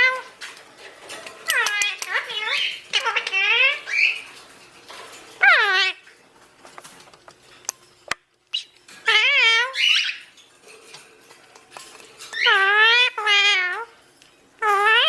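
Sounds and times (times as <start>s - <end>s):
parrot squawking: 0.0s - 0.4s, 1.4s - 4.4s, 5.3s - 6.2s, 8.5s - 10.4s, 12.2s - 14.0s, 14.6s - 15.0s.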